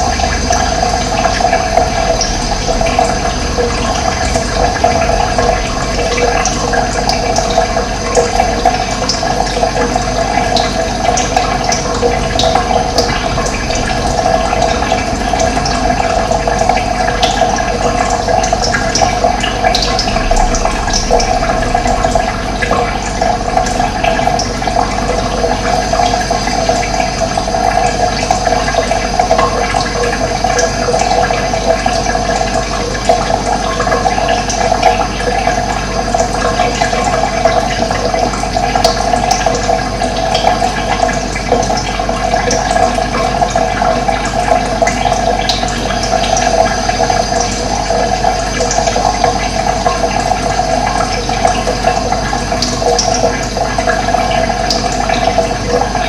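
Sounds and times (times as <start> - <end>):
running water: 0.0 - 56.0.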